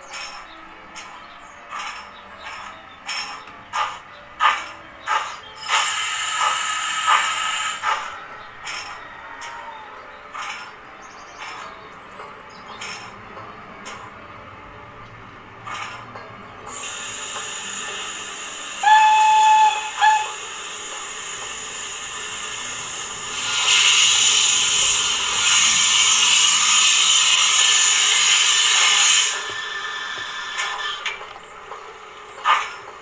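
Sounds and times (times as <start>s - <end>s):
steam hissing: 1.7s - 9.7s, 16.7s - 33.0s
steam whistle: 5.6s - 10.0s, 16.7s - 31.1s.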